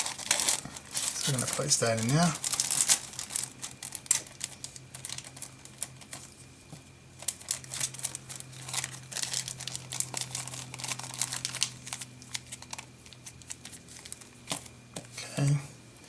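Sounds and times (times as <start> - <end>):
packaging clicks and rustles: 0.0 - 15.1
steady low hum: 0.0 - 16.0.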